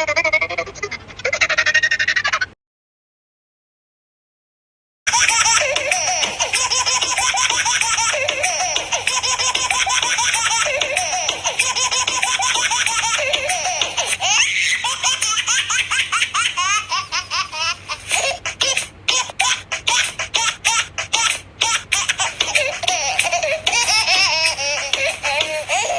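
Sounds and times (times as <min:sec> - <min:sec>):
high-pitched laughter: 0:00.0 - 0:02.6, 0:05.1 - 0:25.9.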